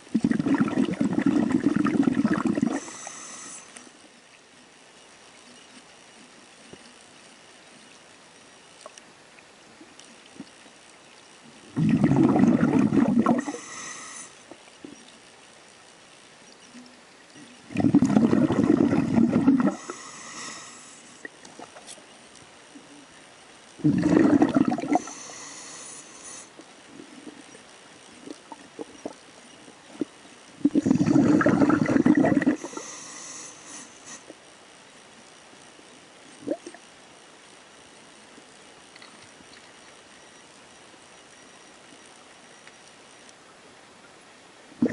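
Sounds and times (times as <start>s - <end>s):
underwater bubbling: 0.0s - 4.4s, 8.8s - 15.3s, 16.5s - 22.4s, 23.8s - 34.4s, 36.4s - 36.9s
water gurgling and bubbling: 0.1s - 3.0s, 11.7s - 13.6s, 17.6s - 20.0s, 23.8s - 25.2s, 29.9s - 32.8s
faint clicks: 5.0s - 11.4s, 38.3s - 40.6s, 41.2s - 43.5s.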